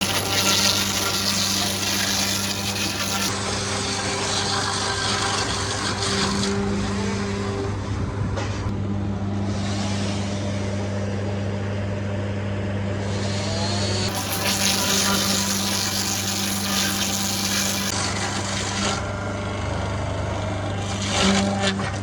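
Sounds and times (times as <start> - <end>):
heavy machinery humming: 0.0 - 22.0
loud hiss: 14.1 - 17.9.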